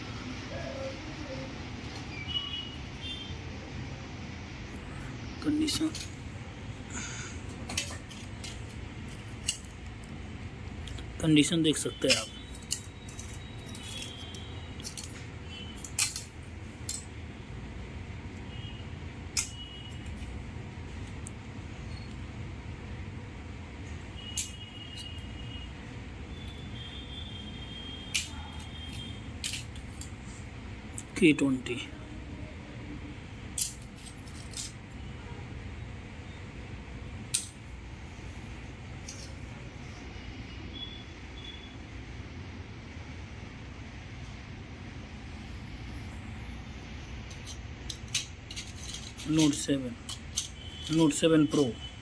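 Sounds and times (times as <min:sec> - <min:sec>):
low background hum: 0:00.0 - 0:52.0
small hard parts clicking: 0:07.0 - 0:17.2, 0:19.3 - 0:20.4, 0:23.9 - 0:25.5, 0:27.6 - 0:30.2, 0:33.4 - 0:34.8, 0:37.2 - 0:37.6, 0:47.1 - 0:51.8
circuit boards clicking: 0:11.7 - 0:17.1, 0:27.7 - 0:30.0.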